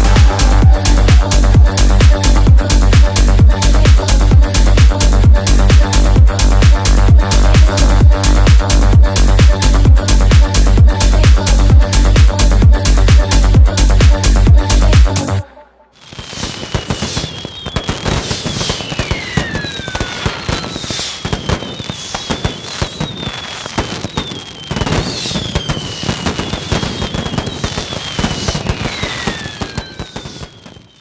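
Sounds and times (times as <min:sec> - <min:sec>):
falling firework whistles: 0:16.0 - 0:31.0
fireworks crackling: 0:16.0 - 0:31.0.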